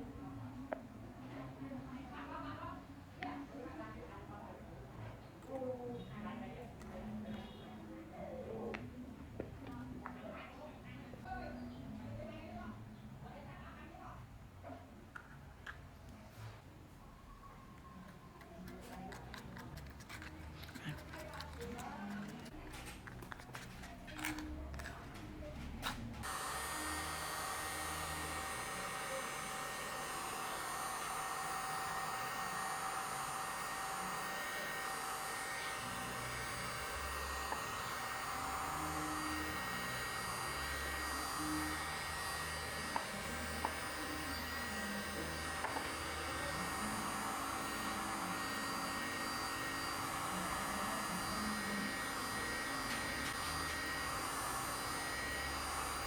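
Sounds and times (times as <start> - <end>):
small electric motor running: 18.4 - 22.6, 26.2 - 56.0.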